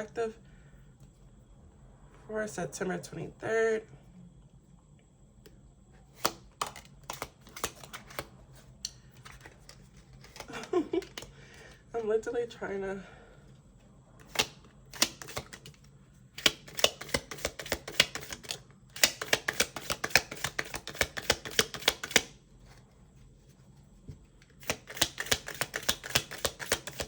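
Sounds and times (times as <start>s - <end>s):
cards being shuffled: 6.1s - 11.4s, 14.2s - 27.0s.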